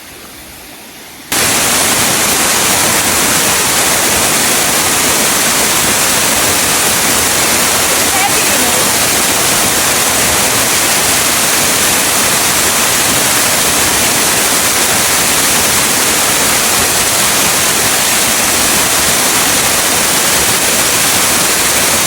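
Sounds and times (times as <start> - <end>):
waterfall rushing: 0.0 - 22.0.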